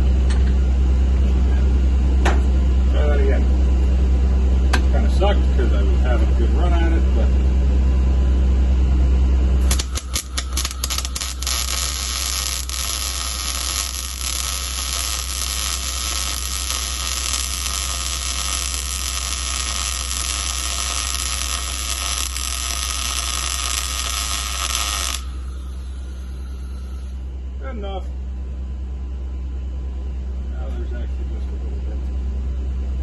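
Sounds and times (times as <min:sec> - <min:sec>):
welding machine low hum: 0:00.0 - 0:33.0
welding arc hissing: 0:09.6 - 0:27.2.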